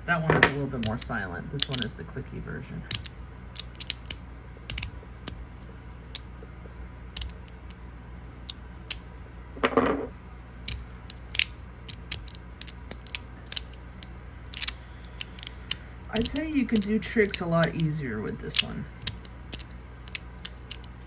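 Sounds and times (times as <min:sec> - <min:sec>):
magnetic fidget slider clicking: 0:00.8 - 0:01.9, 0:02.9 - 0:05.4, 0:07.2 - 0:07.8, 0:10.7 - 0:17.9, 0:18.5 - 0:21.0.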